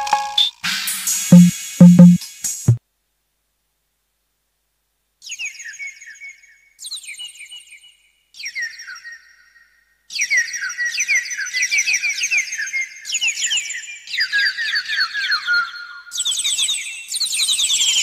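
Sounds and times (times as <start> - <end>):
electronic falling chirps: 1.3 - 2.2.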